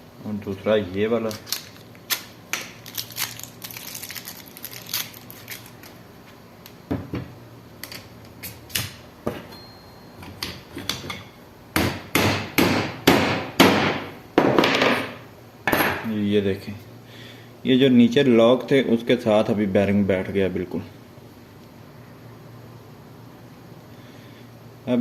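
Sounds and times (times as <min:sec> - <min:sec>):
hammer tapping metal: 0:11.8 - 0:14.0.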